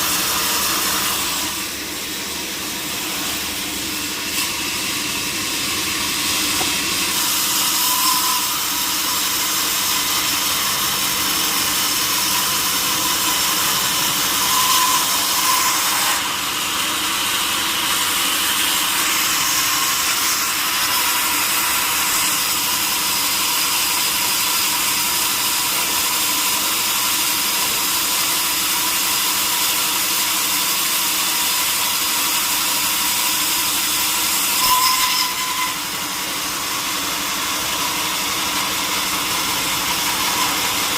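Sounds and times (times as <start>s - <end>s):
power saw cutting wood: 0.0s - 40.9s.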